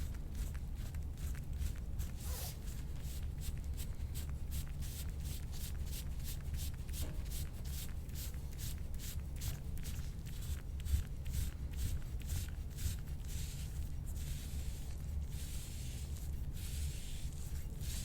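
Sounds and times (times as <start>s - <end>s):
hands rubbing in massage strokes: 11.3s - 18.0s.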